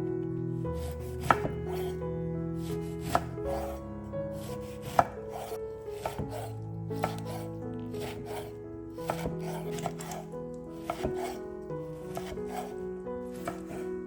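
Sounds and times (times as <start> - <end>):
background music: 0.0 - 14.0
knife chopping on cutting board: 3.0 - 3.8, 4.4 - 10.2, 10.8 - 11.4, 12.1 - 12.7, 13.4 - 13.8.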